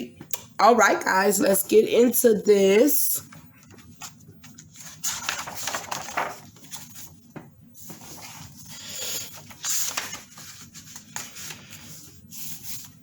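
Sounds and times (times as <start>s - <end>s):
book pages rustling: 3.3s - 13.0s.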